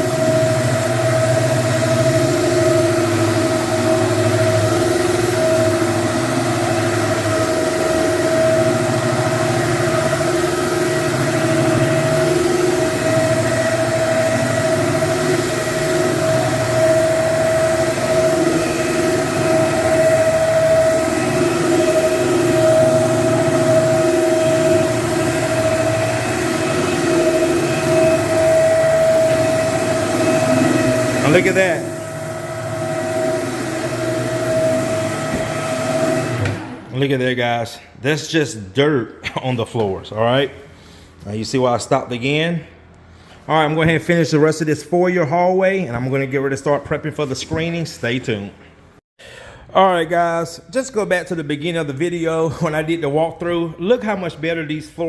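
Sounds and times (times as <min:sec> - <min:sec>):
floor cleaning machine motor hum: 0:00.0 - 0:37.2.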